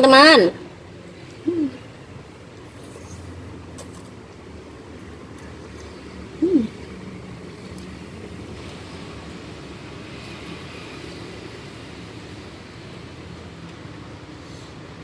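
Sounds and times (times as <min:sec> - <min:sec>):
faint hum: 0:00.0 - 0:03.2, 0:05.8 - 0:07.0.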